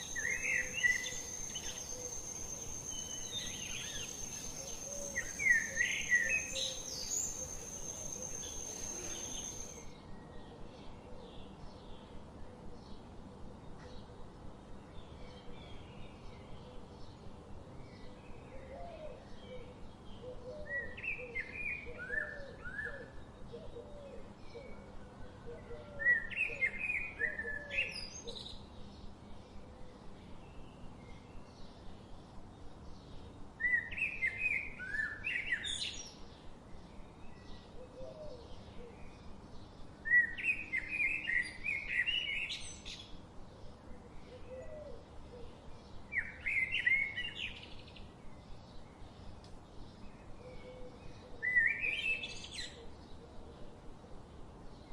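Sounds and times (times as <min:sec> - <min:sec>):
softer bird chirps: 0:00.0 - 0:09.9.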